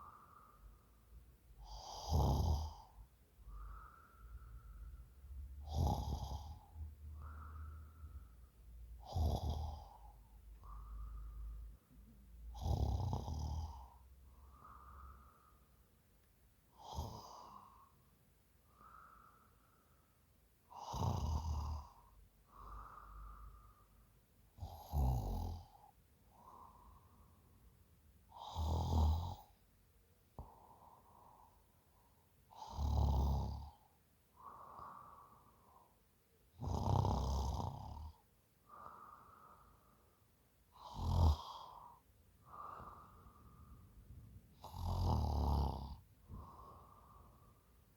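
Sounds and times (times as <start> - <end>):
woman snoring: 1.6 - 3.0, 5.6 - 6.8, 9.0 - 11.5, 12.4 - 14.0, 16.8 - 17.7, 20.7 - 23.5, 24.6 - 25.8, 28.4 - 29.5, 32.5 - 33.8, 36.6 - 38.2, 40.8 - 43.2, 44.5 - 47.4.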